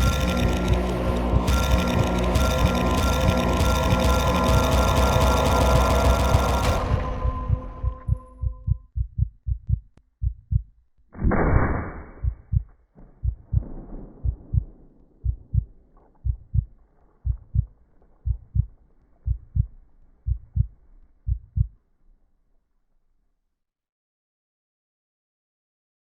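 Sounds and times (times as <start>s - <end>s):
heartbeat thumps: 0.0s - 11.4s, 12.1s - 20.7s, 21.3s - 21.8s.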